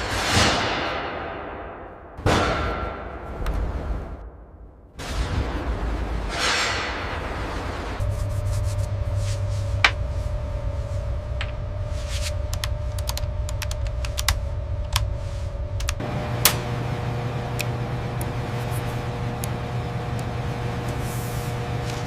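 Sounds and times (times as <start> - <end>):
low mechanical hum: 5.2 - 22.0.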